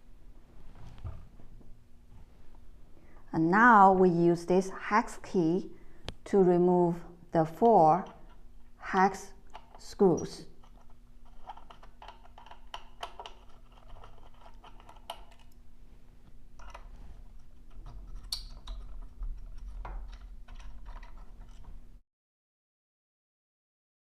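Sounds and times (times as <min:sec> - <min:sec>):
hex key clicking and scraping: 0:10.5 - 0:15.6, 0:16.6 - 0:21.7
small parts being handled: 0:10.6 - 0:15.6, 0:16.6 - 0:21.8.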